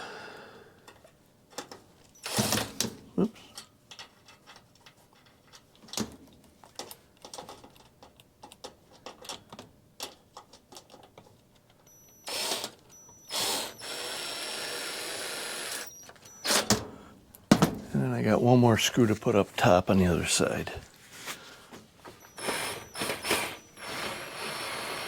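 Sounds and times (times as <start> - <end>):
drill driving screw into metal: 2.2 - 2.9, 11.9 - 16.8, 22.2 - 25.0.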